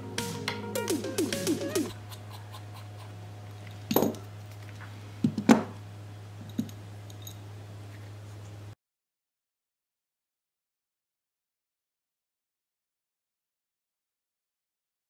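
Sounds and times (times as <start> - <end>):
falling run of music notes: 0.0 - 2.0
steady low hum: 0.0 - 8.8.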